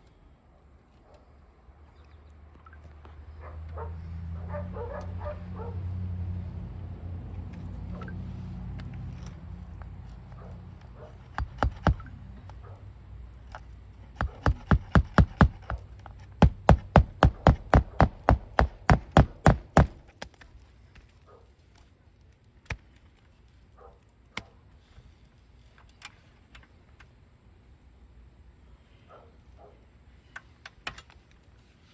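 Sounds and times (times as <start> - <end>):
hammer driving nails: 11.3 - 12.1, 14.2 - 20.4.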